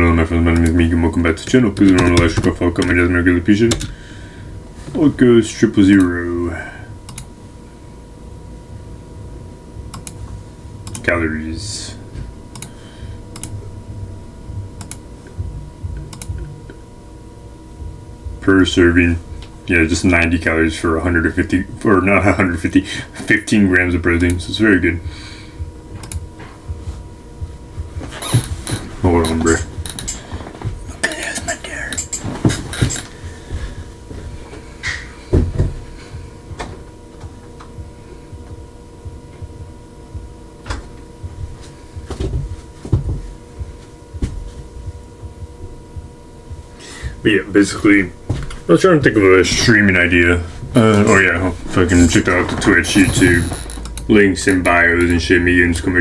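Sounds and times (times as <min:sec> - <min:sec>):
sharp click: 0:26.0 - 0:26.3.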